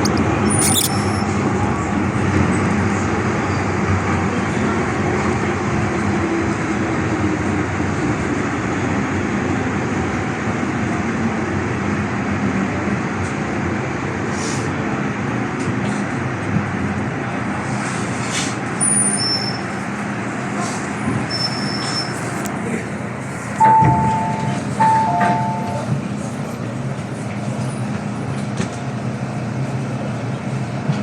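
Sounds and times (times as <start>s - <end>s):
high-pitched train squeals: 0.0s - 1.4s, 18.8s - 19.7s, 21.3s - 22.4s
train rolling rumble: 0.0s - 31.0s.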